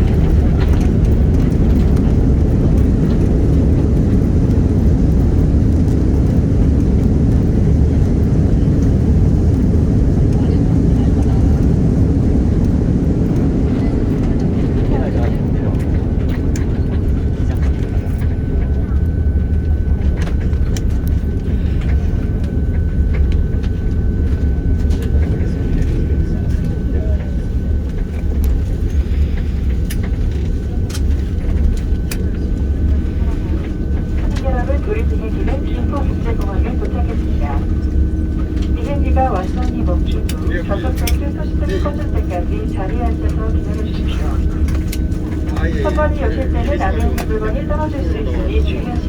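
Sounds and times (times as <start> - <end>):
aircraft cabin rumble: 0.0 - 49.0.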